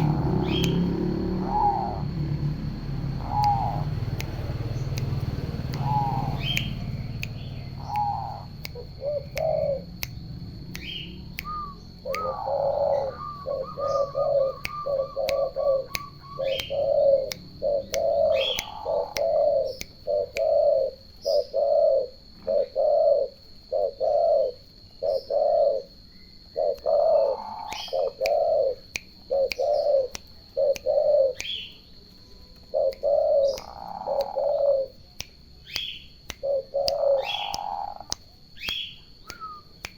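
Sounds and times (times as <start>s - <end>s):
doves cooing: 0.0s - 4.1s, 5.3s - 7.0s, 7.7s - 10.0s, 11.5s - 25.9s, 26.6s - 31.4s, 32.7s - 35.0s, 36.4s - 38.1s
small birds chirping: 0.0s - 39.9s.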